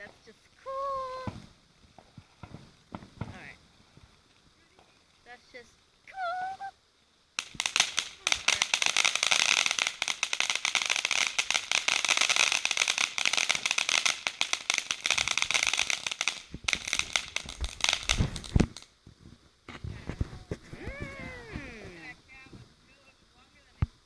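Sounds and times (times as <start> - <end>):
firework crackling: 0.0 - 24.0
low thumps: 19.8 - 22.7.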